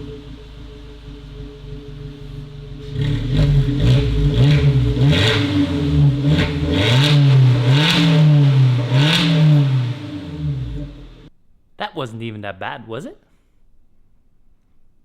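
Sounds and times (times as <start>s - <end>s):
car engine revving: 0.0s - 11.3s.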